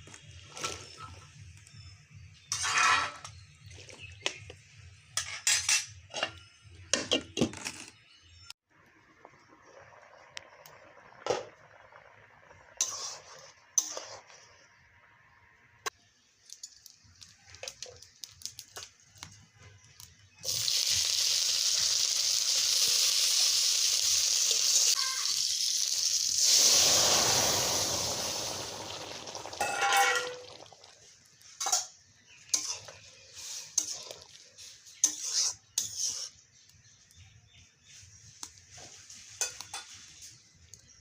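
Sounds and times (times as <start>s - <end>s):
food sizzling in a pan: 11.4s - 14.9s, 20.4s - 36.4s
spoon stirring in a pan: 12.8s - 14.6s, 31.6s - 36.5s, 38.5s - 40.4s.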